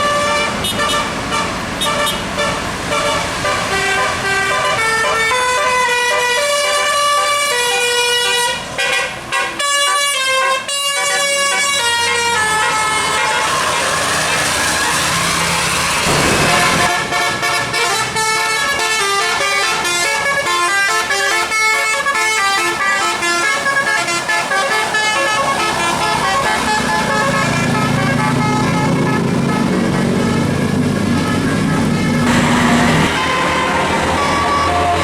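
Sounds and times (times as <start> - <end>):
low steady horn drone: 16.0 - 17.3, 22.8 - 35.0
musical air horn melody: 16.0 - 35.0.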